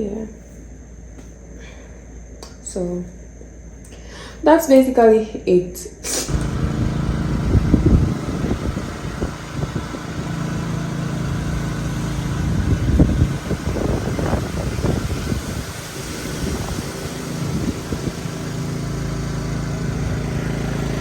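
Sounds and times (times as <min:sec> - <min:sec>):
vehicle engine humming: 0:06.3 - 0:21.0.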